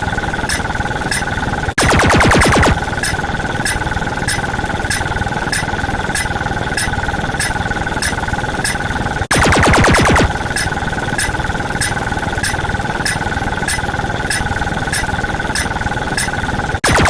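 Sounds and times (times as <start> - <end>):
sharp electronic ticks: 0.0 - 17.0
rapid falling electronic sweeps: 1.8 - 3.2, 9.3 - 10.6.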